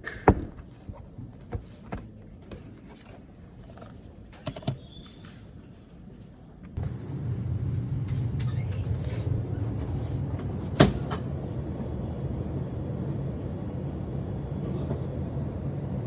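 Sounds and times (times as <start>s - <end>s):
steady low rumble: 6.8s - 16.0s.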